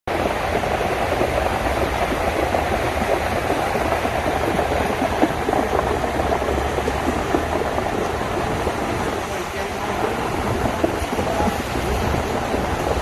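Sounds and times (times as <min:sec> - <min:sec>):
torrential rain: 0:00.1 - 0:13.0
wind rumbling on microphone: 0:00.1 - 0:13.0.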